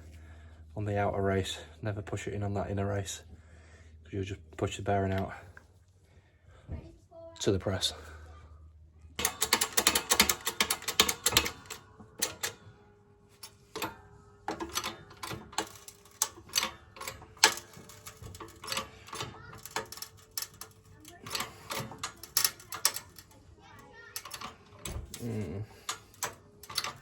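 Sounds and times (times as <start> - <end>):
sharp metal clicks and clanks: 9.2 - 12.6, 13.4 - 27.0.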